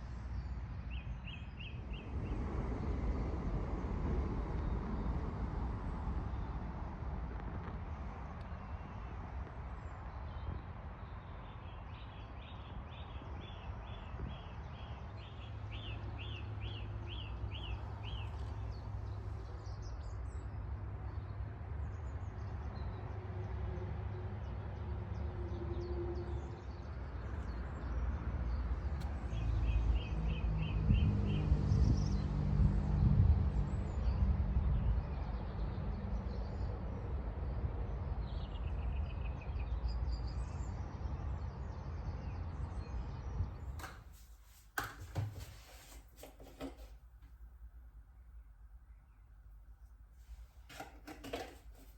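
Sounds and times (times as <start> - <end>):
steady low rumble: 1.6 - 8.4.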